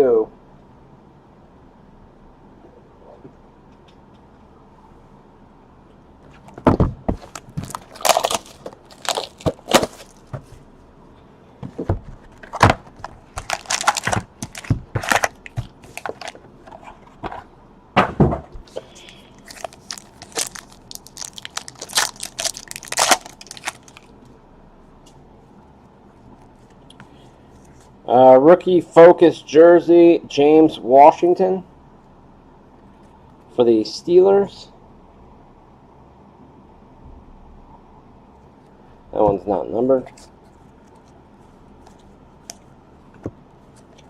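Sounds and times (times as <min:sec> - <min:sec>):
packaging crinkling and tearing: 0:07.2 - 0:10.3, 0:12.4 - 0:16.4, 0:19.0 - 0:24.1.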